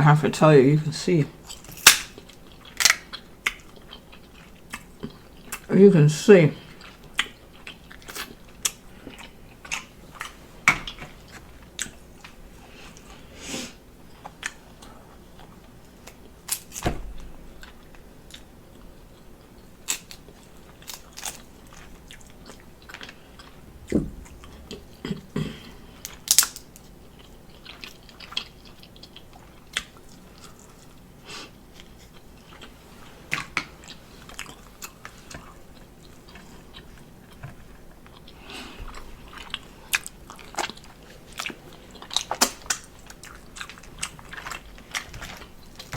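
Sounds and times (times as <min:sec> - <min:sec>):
wet chewing and biting: 0:01.5 - 0:05.7, 0:31.7 - 0:45.9
sharp cracks of shells: 0:01.8 - 0:02.2.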